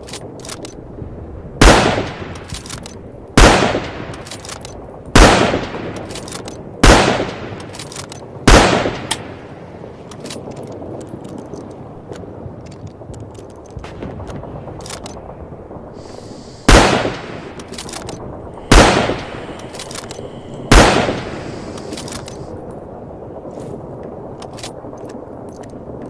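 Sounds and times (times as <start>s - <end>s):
rifle shots with echo: 1.6s - 2.6s, 3.4s - 4.5s, 5.1s - 7.8s, 8.4s - 9.5s, 16.6s - 22.5s
rifle bolt clicks: 4.1s - 4.8s.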